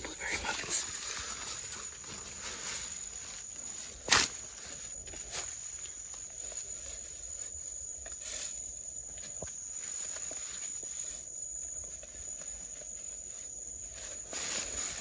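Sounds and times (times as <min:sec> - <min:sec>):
footsteps rustling through undergrowth: 0:00.0 - 0:15.0
night insects trilling: 0:00.0 - 0:15.0.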